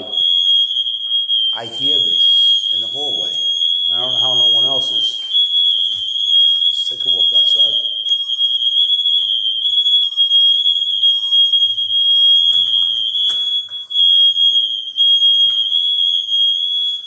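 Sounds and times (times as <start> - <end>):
smoke alarms beeping: 0.0 - 17.0.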